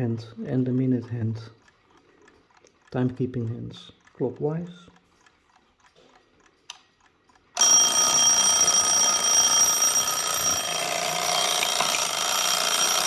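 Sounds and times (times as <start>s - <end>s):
alarm clock bell ringing: 7.6s - 13.0s.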